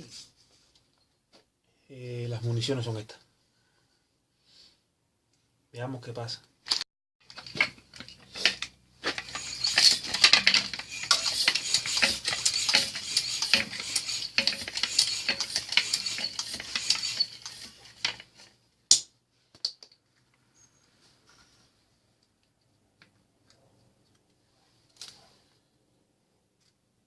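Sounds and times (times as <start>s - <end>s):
air rifle clattering and clicking: 6.7s - 18.4s.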